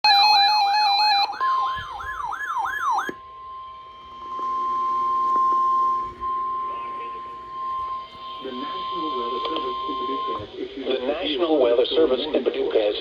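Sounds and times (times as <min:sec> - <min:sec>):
siren-like sweeping tone: 0:00.0 - 0:10.4.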